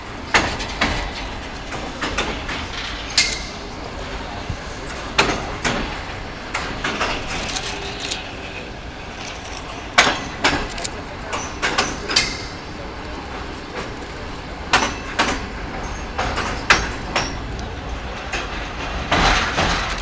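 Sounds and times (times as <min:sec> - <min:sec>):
train rumble inside carriage: 0:00.0 - 0:20.0
sharp knocks and rattles: 0:00.3 - 0:03.8, 0:04.9 - 0:12.7, 0:14.6 - 0:20.0.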